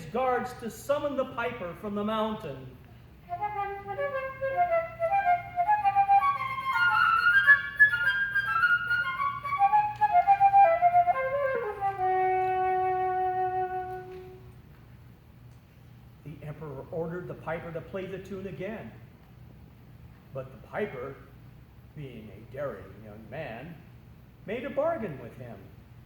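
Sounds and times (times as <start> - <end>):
solo flute melody: 3.2 - 14.5.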